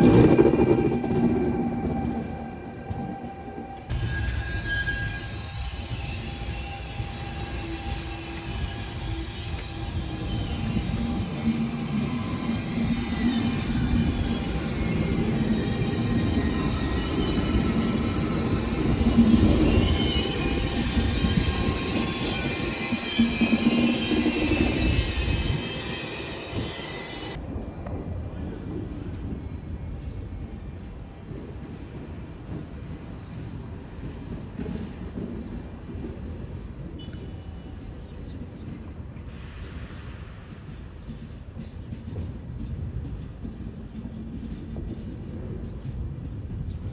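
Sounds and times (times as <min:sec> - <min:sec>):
train rumbling on rails: 0:00.0 - 0:46.9
faint high-pitched squeals: 0:35.6 - 0:38.5.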